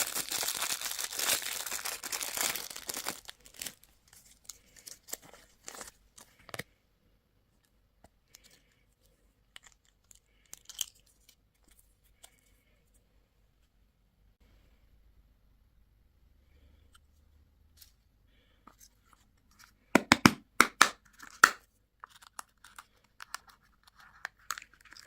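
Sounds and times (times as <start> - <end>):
candy wrapper tearing and crinkling: 0.0 - 6.4, 9.5 - 11.8, 21.2 - 25.0.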